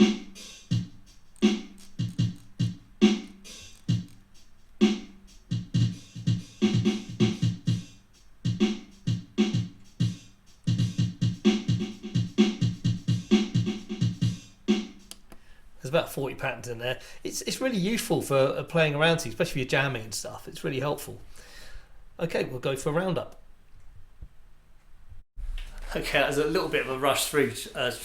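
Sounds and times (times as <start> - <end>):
drum machine beat: 0.0 - 15.2.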